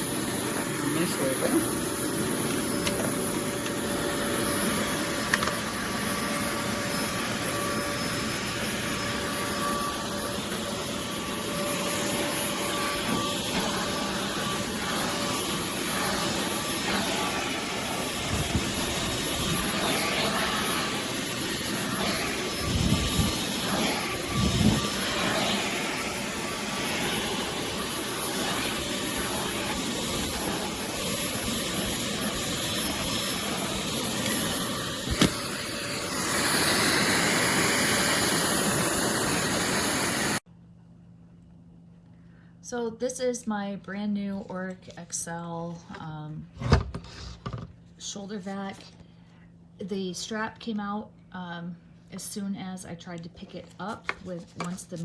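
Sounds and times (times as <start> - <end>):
canister vacuum running: 0.0 - 40.4, 46.0 - 47.8.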